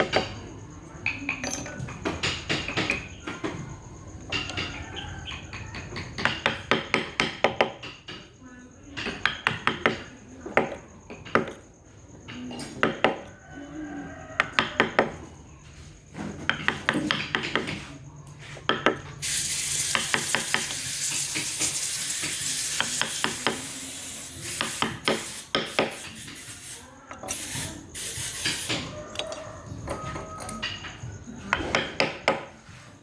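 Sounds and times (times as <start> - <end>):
carving tool taps and clicks: 5.5 - 8.2, 9.0 - 11.6, 12.7 - 13.3, 16.4 - 19.1, 24.6 - 26.1.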